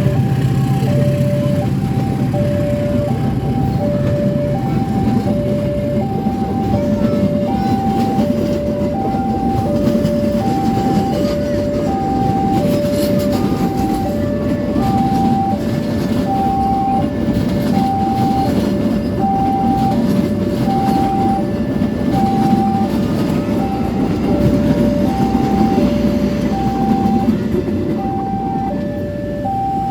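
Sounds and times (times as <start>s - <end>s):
train wheels rumbling: 0.0s - 29.9s
two-tone crossing alarm: 0.0s - 29.9s.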